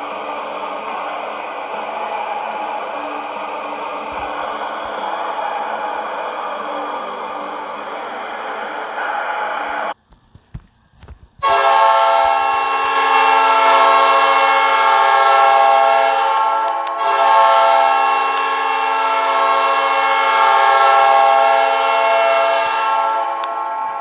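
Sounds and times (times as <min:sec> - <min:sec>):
goal air horn blast: 0:11.4 - 0:23.9.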